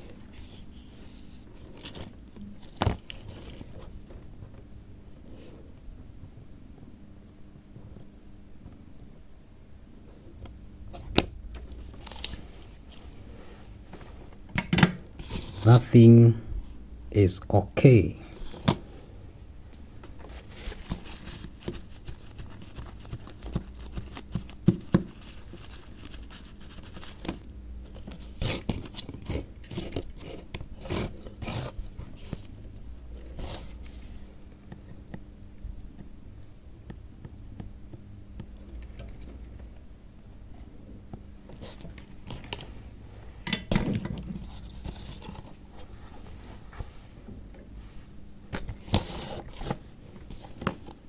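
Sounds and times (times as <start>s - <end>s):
steady low hum: 0.0s - 24.3s.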